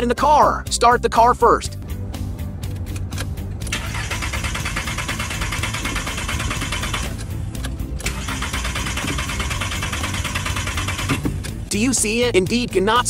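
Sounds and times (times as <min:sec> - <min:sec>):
car engine cranking on starter: 0:03.6 - 0:11.6.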